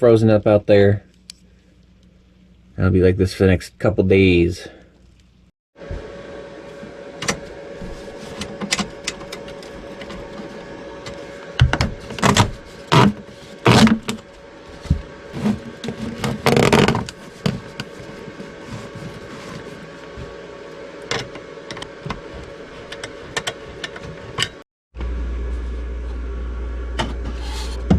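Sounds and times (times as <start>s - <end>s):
steady hum: 0.0s - 27.9s
ducting scraping and rustling: 6.7s - 24.6s.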